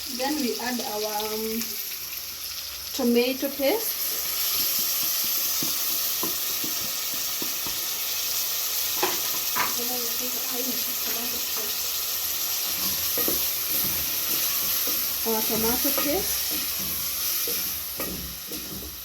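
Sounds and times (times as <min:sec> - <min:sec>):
food sizzling in hot oil: 0:00.0 - 0:19.0
spoon knocking and scraping pot: 0:04.4 - 0:07.9, 0:09.0 - 0:09.8, 0:12.6 - 0:19.0.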